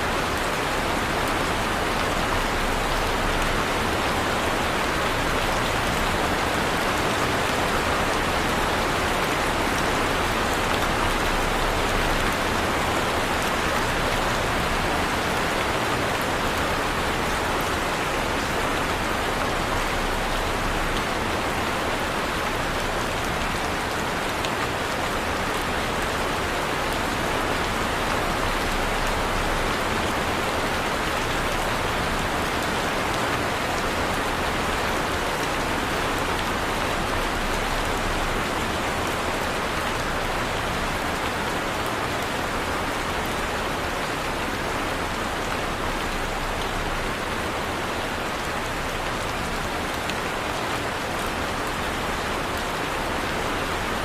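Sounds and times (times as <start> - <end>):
heavy rain: 0.0 - 54.0.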